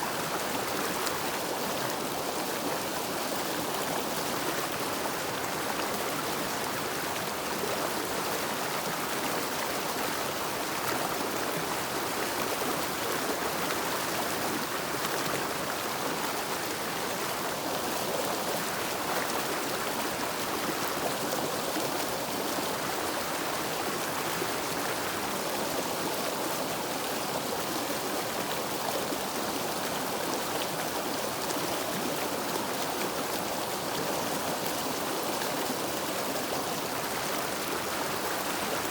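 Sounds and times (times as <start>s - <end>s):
river water flowing: 0.0s - 38.9s.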